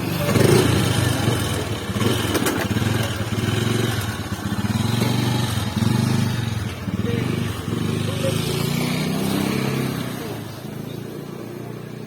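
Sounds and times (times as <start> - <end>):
motorcycle engine idling: 0.0 - 8.8.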